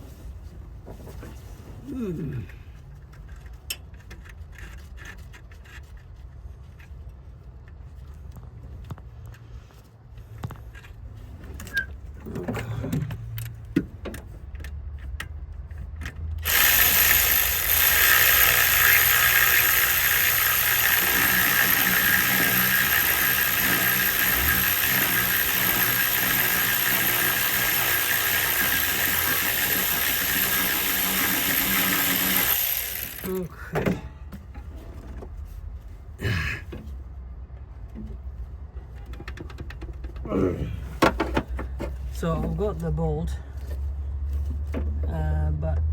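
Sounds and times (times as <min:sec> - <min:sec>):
handheld power tool running: 0:16.4 - 0:33.5.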